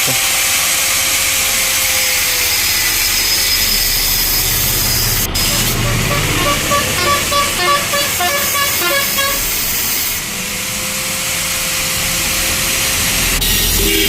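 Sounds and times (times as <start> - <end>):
angle grinder cutting steel pipe: 0.0 - 13.9
beeping tones tune: 5.5 - 9.4.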